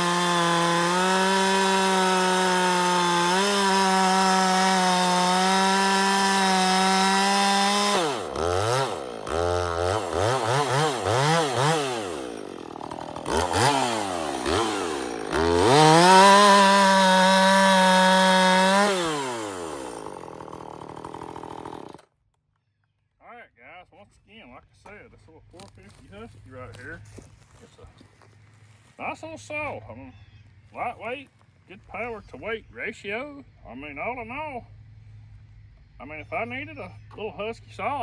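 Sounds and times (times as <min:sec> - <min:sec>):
chainsaw revving: 0:00.0 - 0:22.1.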